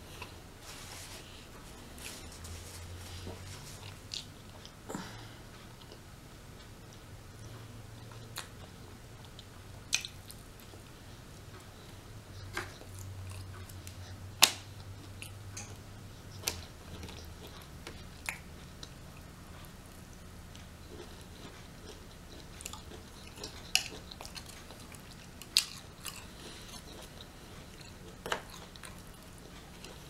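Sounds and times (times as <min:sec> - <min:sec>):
chewing chicken: 0:07.4 - 0:30.0.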